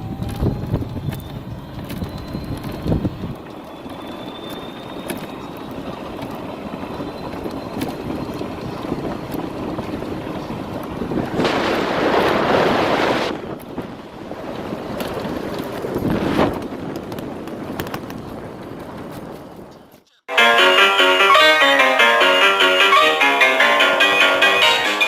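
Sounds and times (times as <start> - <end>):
wind rushing on microphone: 0.0 - 19.9
rolling and road noise: 0.0 - 25.0.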